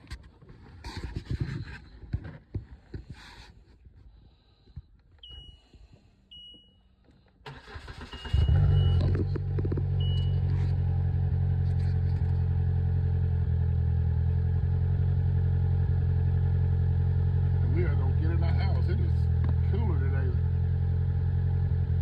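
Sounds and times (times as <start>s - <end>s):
car engine cranking and idling: 4.9s - 22.0s
short electronic beeps: 7.7s - 9.3s, 10.0s - 10.5s.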